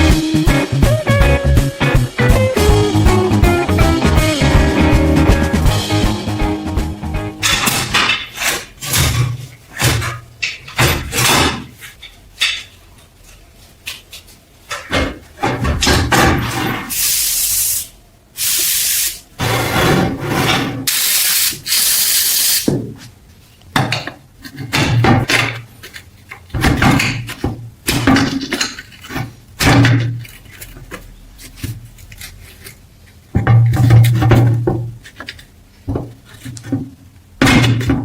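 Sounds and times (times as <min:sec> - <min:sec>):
spray bursts hissing: 0:16.9 - 0:19.3, 0:20.9 - 0:22.7
parts clicking and knocking: 0:23.7 - 0:38.0.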